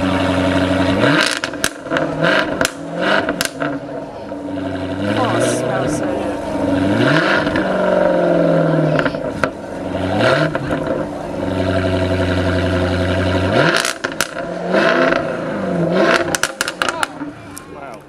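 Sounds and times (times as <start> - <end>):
car engine revving: 0.0 - 18.0
exhaust pops and crackles: 0.3 - 5.0, 12.0 - 18.0.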